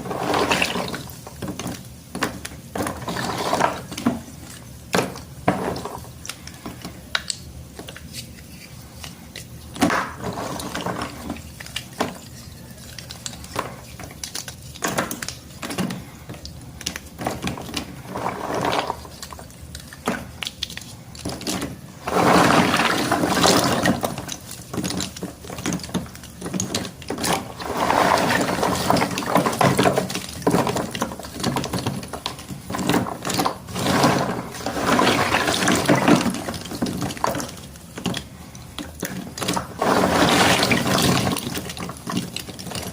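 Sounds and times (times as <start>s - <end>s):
chalk sticks sloshing in water: 0.0s - 7.2s, 7.8s - 42.9s
soaked chalk snapping: 0.8s - 17.9s, 18.7s - 21.8s.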